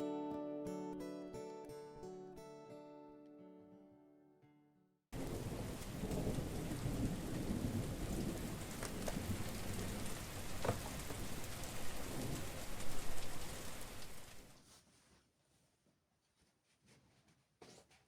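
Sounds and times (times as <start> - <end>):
heavy rain pouring: 5.2 - 14.5
single raindrops striking close: 5.2 - 14.5.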